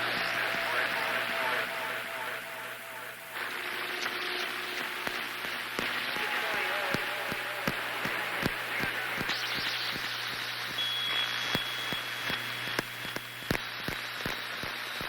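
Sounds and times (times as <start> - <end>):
static hiss: 0.0 - 15.0
crackling clicks: 3.3 - 15.0
thin high whistle tone: 10.8 - 12.2.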